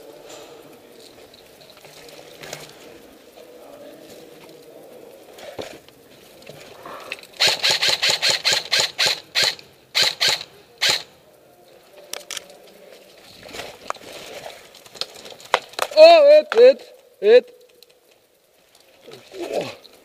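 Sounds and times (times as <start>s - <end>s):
airsoft gun shots: 7.4s - 11.1s.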